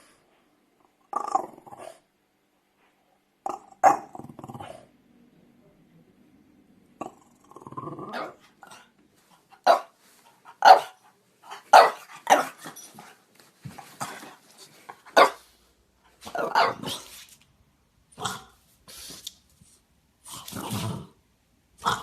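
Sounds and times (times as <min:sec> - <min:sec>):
dog barking: 0:09.6 - 0:10.0, 0:10.6 - 0:12.6, 0:15.1 - 0:15.5, 0:16.3 - 0:17.0.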